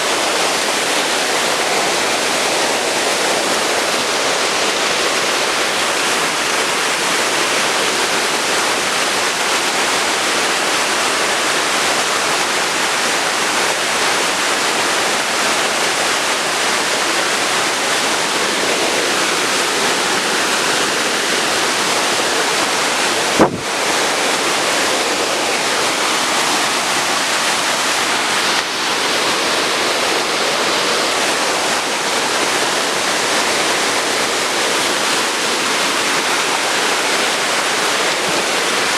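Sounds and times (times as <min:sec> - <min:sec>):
waterfall rushing: 0:00.0 - 0:38.9.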